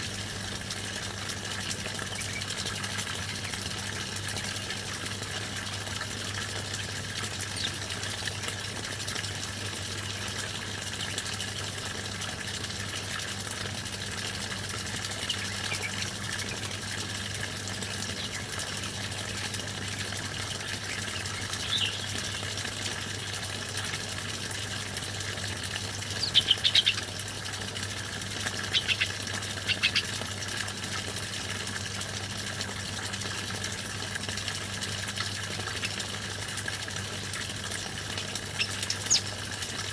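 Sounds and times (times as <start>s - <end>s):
songbirds chirping: 15.2s - 22.8s, 26.1s - 27.1s, 28.6s - 30.2s, 37.8s - 39.4s.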